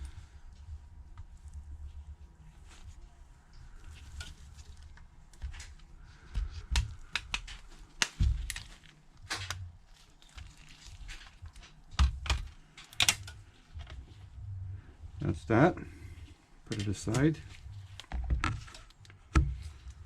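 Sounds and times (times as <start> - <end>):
plastic clips snapping: 11.6 - 13.4.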